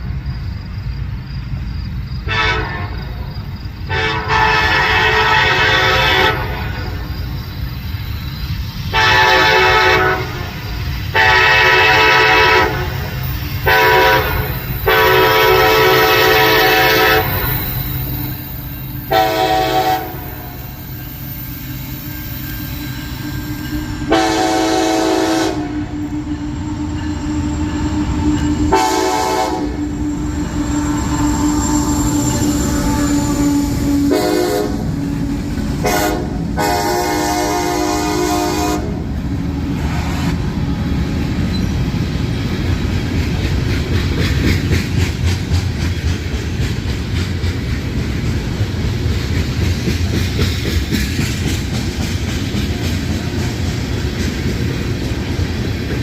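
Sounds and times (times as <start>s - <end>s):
train rumbling past: 0.0s - 56.0s
train air horn blasts: 2.3s - 3.1s, 3.9s - 7.1s, 8.9s - 18.4s, 19.0s - 20.6s, 23.1s - 26.4s, 28.7s - 41.0s.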